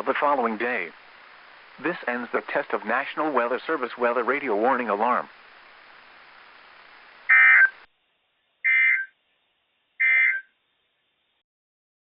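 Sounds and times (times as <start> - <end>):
faint radio hiss: 0.0 - 11.4
digital data tone bursts: 7.3 - 7.8, 8.7 - 9.1, 10.0 - 10.5.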